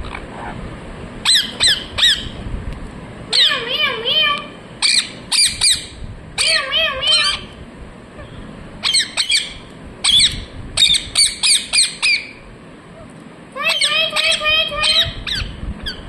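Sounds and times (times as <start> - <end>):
parrot squawking: 1.2 - 2.4, 3.3 - 7.5, 8.2 - 12.4, 13.0 - 16.0.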